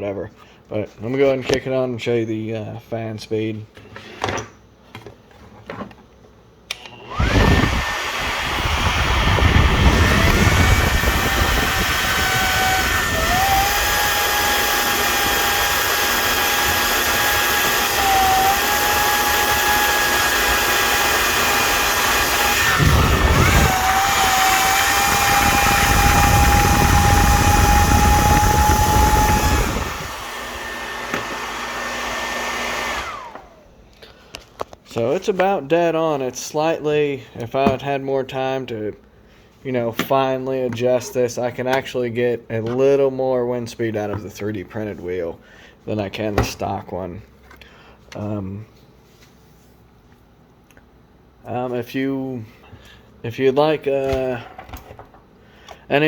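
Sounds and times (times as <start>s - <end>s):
electric blower fan whining: 6.7s - 33.8s.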